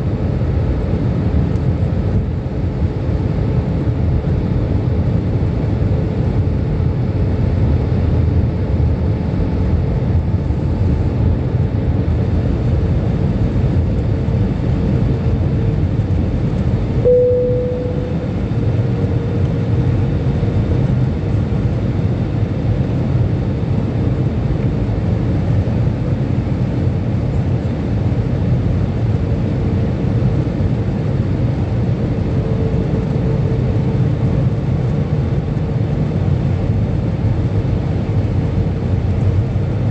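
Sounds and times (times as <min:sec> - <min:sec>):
airplane cabin engine rumble: 0:00.0 - 0:39.9
faint hum: 0:10.5 - 0:39.9
short bright tone: 0:17.1 - 0:18.3.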